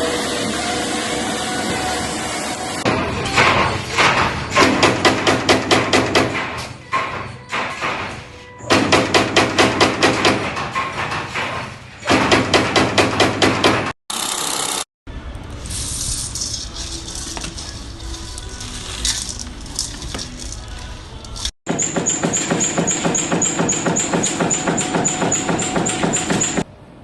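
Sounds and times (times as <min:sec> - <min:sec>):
steady machine noise: 0:00.0 - 0:03.2, 0:21.2 - 0:26.7.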